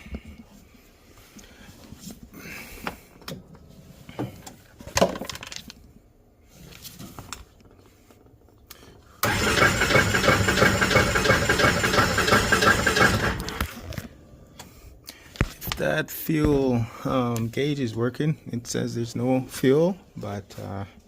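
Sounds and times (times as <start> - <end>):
starter cranking engine: 9.2 - 13.7.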